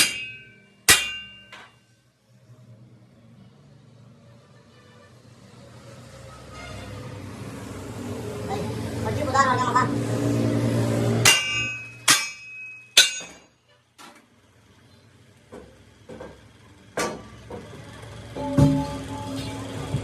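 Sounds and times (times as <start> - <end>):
hammer striking metal: 0.0 - 1.8, 11.2 - 13.6, 18.4 - 19.4.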